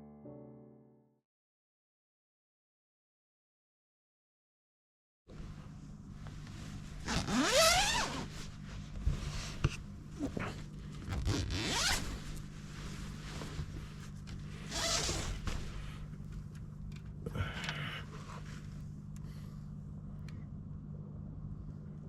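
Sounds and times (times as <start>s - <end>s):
steady low hum: 5.3s - 22.0s
zipper pulled: 7.0s - 8.5s, 10.2s - 12.5s, 14.6s - 15.8s.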